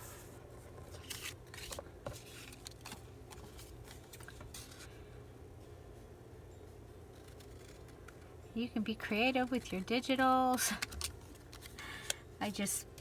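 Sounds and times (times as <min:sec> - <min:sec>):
paper rustling: 0:00.0 - 0:04.9
scissors snipping paper: 0:07.2 - 0:08.0.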